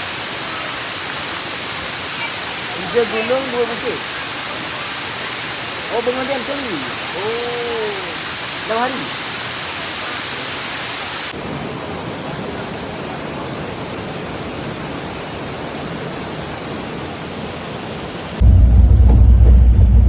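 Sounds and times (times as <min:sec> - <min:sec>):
waterfall rushing: 0:00.0 - 0:20.0
loud low rumble: 0:18.4 - 0:20.0.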